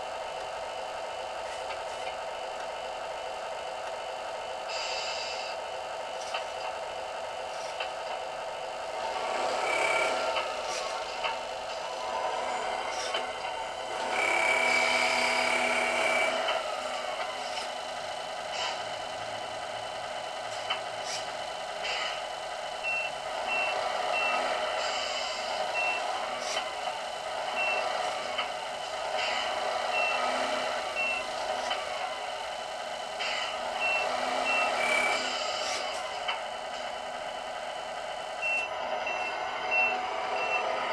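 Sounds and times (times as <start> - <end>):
truck engine running: 0.0 - 40.9
sharp air hiss bursts: 4.7 - 5.6
reversing beeps: 22.8 - 24.4, 25.7 - 26.1, 27.6 - 27.8, 29.9 - 30.2, 30.9 - 31.3, 33.8 - 35.3, 38.4 - 40.9.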